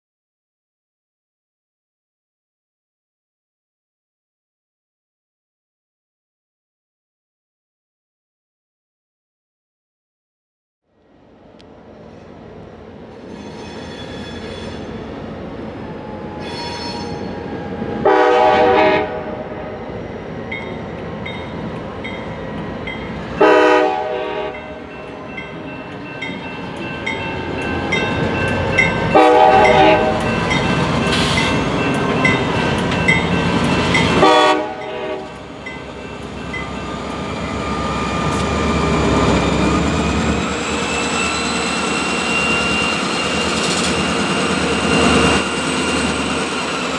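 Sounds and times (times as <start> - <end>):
train rumble: 11.0 - 46.9
locomotive air horn blasts: 18.0 - 19.6, 23.4 - 24.8, 29.1 - 30.3, 34.1 - 35.4.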